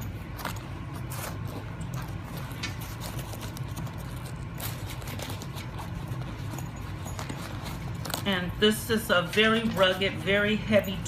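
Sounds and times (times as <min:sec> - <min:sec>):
zipper clicks and scrapes: 0:00.0 - 0:08.6
steady low hum: 0:00.0 - 0:11.0.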